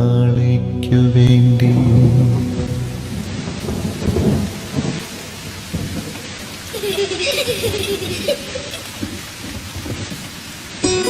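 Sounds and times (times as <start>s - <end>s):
low rumbling: 0.0s - 8.3s
rain-like noise: 1.2s - 11.0s.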